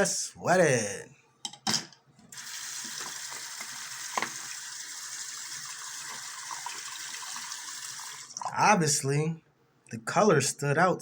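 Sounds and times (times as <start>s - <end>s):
water running from a tap: 2.4s - 8.5s.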